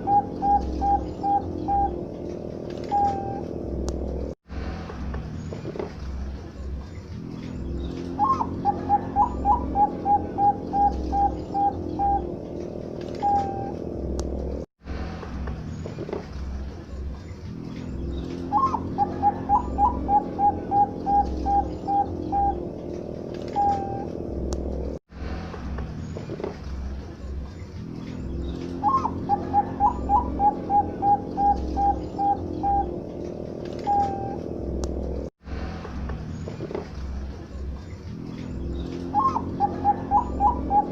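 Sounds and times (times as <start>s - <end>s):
dove cooing: 0.0s - 3.5s, 8.2s - 13.8s, 18.5s - 24.2s, 28.8s - 34.4s, 39.1s - 40.9s.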